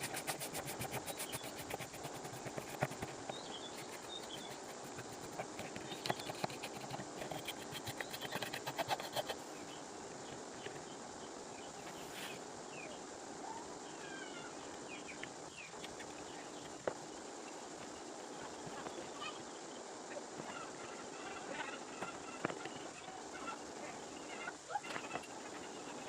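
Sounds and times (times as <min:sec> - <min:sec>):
birds chirping: 0:02.9 - 0:08.5.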